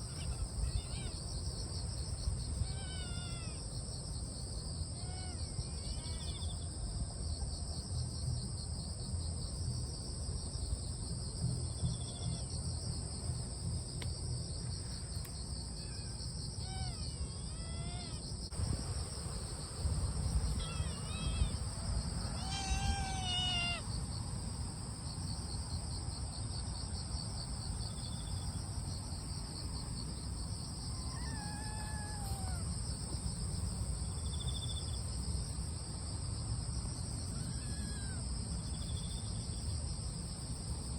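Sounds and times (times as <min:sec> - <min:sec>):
kittens meowing: 0:00.0 - 0:01.2, 0:02.6 - 0:03.6, 0:05.0 - 0:06.4, 0:15.7 - 0:18.2, 0:20.3 - 0:23.8, 0:30.8 - 0:32.8, 0:37.4 - 0:38.2
crickets chirring: 0:00.0 - 0:40.9.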